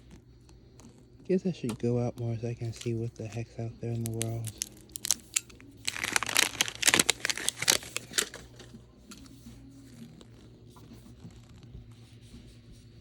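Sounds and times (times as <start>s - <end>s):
faint handling: 0.0s - 13.0s
plastic wrapping crackling: 2.5s - 10.4s.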